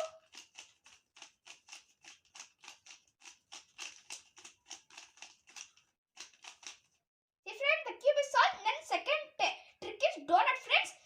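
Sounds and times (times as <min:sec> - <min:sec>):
faint plastic clicks of puzzle cube: 0:00.1 - 0:07.0.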